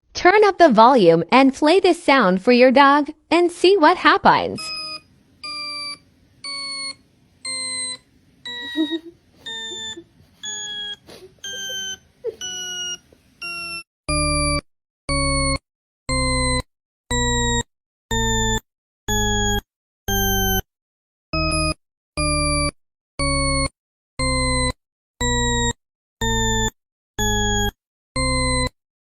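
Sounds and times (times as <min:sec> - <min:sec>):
electronic beeps: 0:04.6 - 0:14.6, 0:26.2 - 0:28.7.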